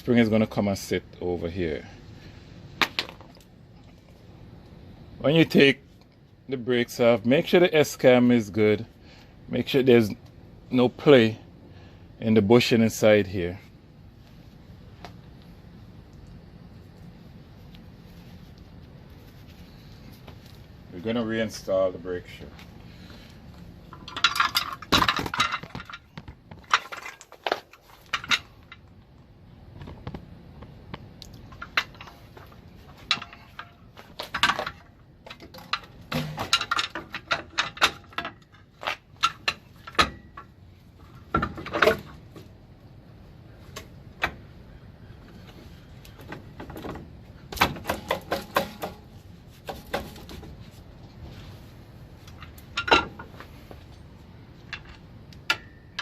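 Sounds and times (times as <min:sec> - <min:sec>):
metal parts clinking and clanking: 0:23.9 - 0:28.9, 0:31.4 - 0:42.2, 0:52.2 - 0:54.0, 0:54.6 - 0:56.0.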